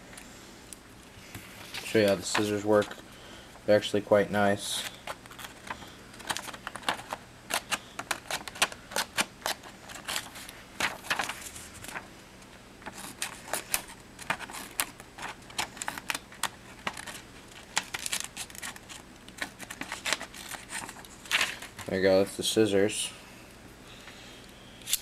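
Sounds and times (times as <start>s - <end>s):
scissors snipping paper: 5.4s - 11.3s, 12.8s - 21.6s.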